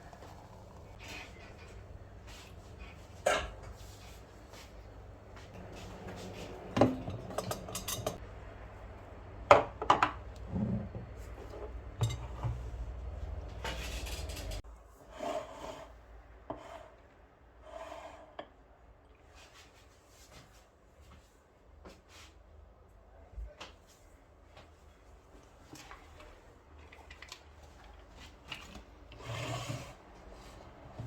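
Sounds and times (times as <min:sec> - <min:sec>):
utensils and dishes clinking: 0:06.7 - 0:08.2, 0:11.5 - 0:12.7, 0:13.5 - 0:14.6.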